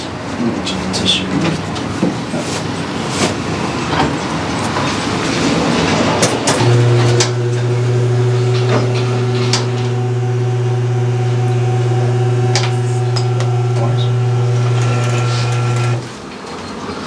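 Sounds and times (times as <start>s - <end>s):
massage gun rattling hum: 6.2s - 16.1s.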